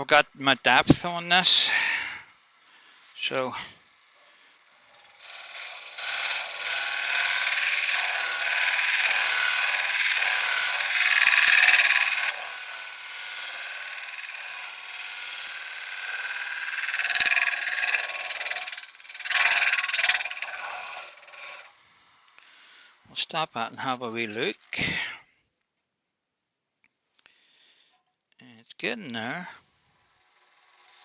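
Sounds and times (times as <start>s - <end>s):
lathe tool hissing into wood: 4.4s - 21.7s, 29.6s - 31.0s.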